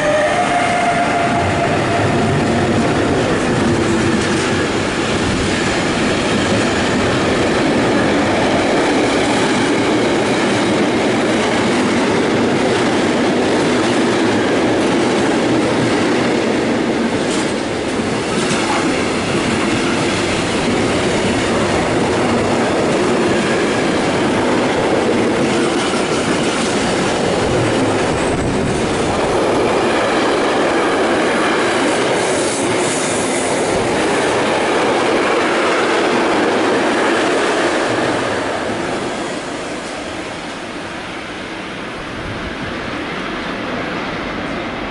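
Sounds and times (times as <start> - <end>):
train passing at speed: 0.0 - 44.9.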